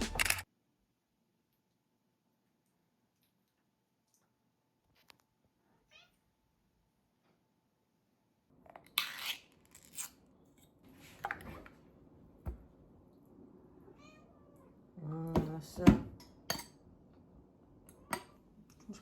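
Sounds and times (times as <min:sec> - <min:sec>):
cat meowing: 0:05.8 - 0:06.2, 0:13.9 - 0:14.8.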